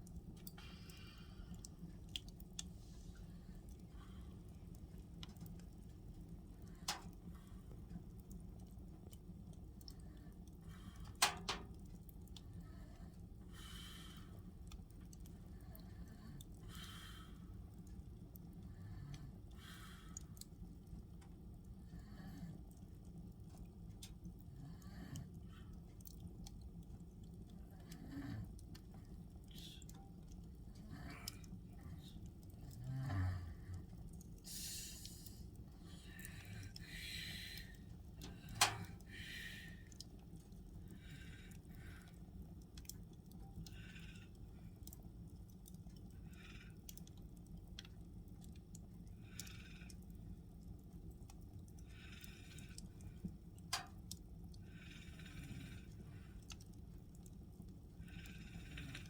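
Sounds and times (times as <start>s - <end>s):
fire crackles: 0.0s - 59.0s
steady low hum: 0.0s - 59.0s
soft snoring breaths: 12.4s - 20.4s, 24.4s - 26.6s, 27.2s - 47.4s, 48.0s - 53.9s, 54.6s - 59.0s.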